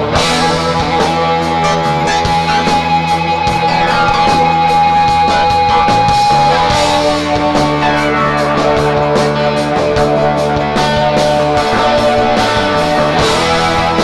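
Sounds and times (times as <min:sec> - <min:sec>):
bass guitar: 0:00.0 - 0:14.0
drums: 0:00.0 - 0:14.0
sustained electric guitar note: 0:11.7 - 0:14.0.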